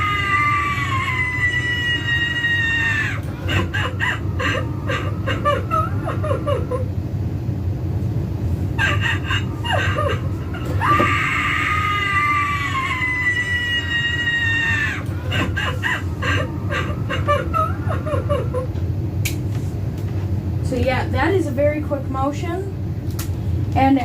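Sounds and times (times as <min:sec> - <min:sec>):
high wailing scream: 0:00.0 - 0:06.8, 0:08.8 - 0:18.6
broken sobbing: 0:00.0 - 0:06.9, 0:08.8 - 0:18.8.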